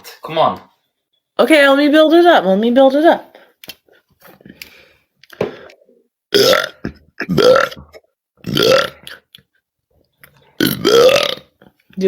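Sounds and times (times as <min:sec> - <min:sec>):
woman belching: 0:06.3 - 0:09.2, 0:10.6 - 0:11.5.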